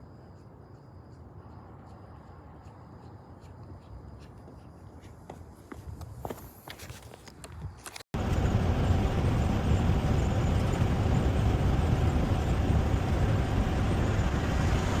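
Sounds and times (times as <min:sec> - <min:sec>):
motor vehicle rumbling: 0:07.9 - 0:15.0.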